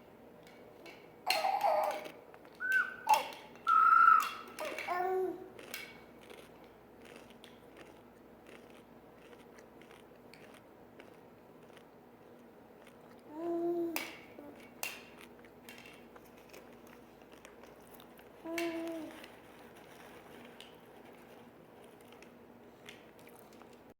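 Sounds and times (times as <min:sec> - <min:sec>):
faint clicks and mouth noises: 0:00.4 - 0:23.9
baby vocal sounds: 0:01.3 - 0:05.6, 0:13.3 - 0:14.7, 0:18.4 - 0:19.3.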